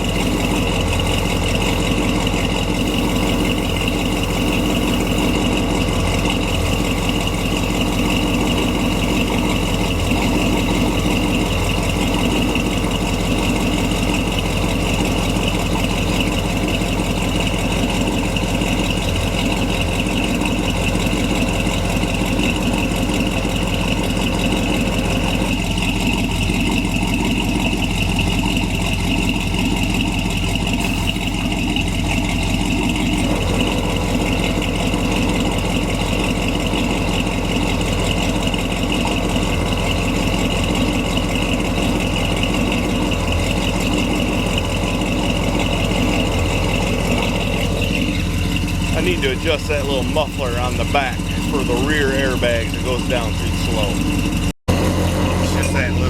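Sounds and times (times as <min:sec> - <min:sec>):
high-pitched whine: 0:00.0 - 0:21.1
pickup engine idling: 0:00.0 - 0:56.0.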